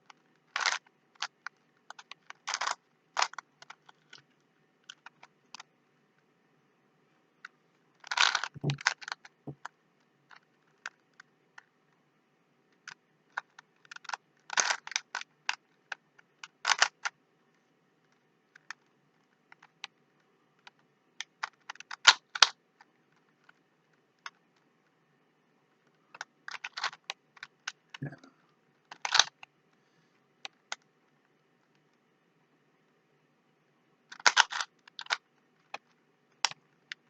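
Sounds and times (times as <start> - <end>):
puzzle cube clicking: 0.0 - 5.7, 7.4 - 9.7, 12.7 - 17.2, 18.0 - 20.0, 20.6 - 23.6, 25.8 - 28.3, 28.9 - 29.5, 34.1 - 37.0.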